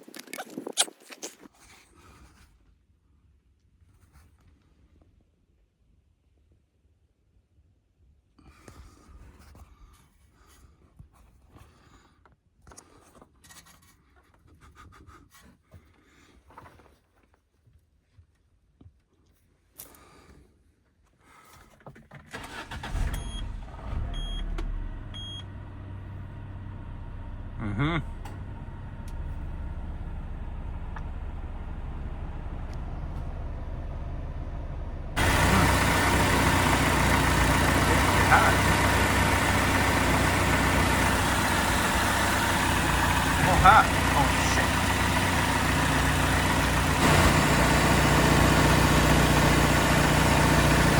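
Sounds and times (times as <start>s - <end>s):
hands scraping and rubbing parts: 0.0s - 2.4s
car engine idling: 22.4s - 50.9s.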